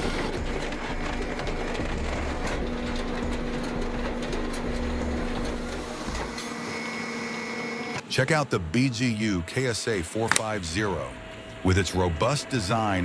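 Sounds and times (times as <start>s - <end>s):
firewood processor clatter: 0.0s - 7.0s
steady machine hum: 0.0s - 13.0s.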